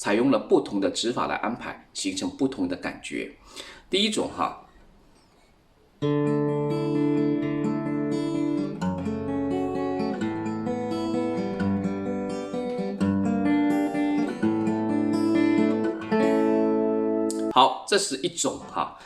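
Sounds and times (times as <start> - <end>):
acoustic guitar chords: 6.0 - 17.5.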